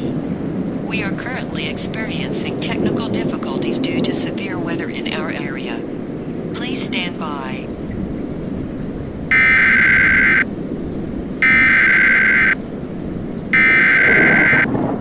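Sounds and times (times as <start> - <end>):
warbling two-tone data bursts: 9.3 - 10.5, 11.4 - 12.6, 13.6 - 14.7.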